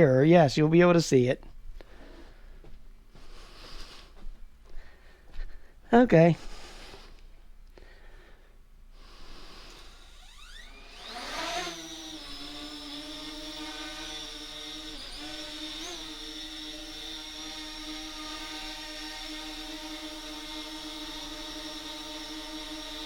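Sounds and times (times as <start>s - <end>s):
drone propeller whine and hum: 9.7s - 23.0s.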